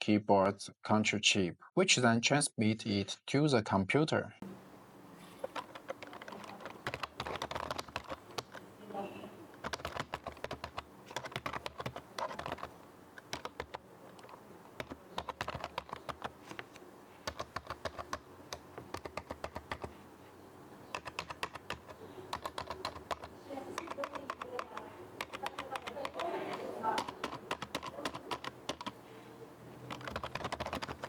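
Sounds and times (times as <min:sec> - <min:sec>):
typing on a keyboard: 0:05.2 - 0:20.0, 0:20.8 - 0:29.0, 0:29.8 - 0:31.0.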